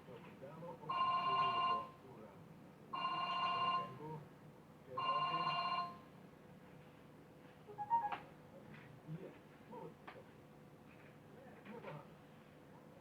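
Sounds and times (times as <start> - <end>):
electronic telephone ring: 0.9 - 1.9, 3.0 - 4.0, 5.0 - 6.0.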